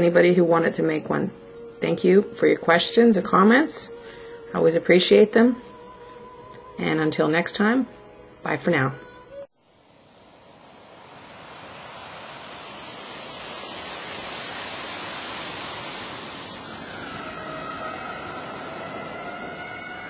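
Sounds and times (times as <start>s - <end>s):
steady rushing noise: 9.6s - 20.0s.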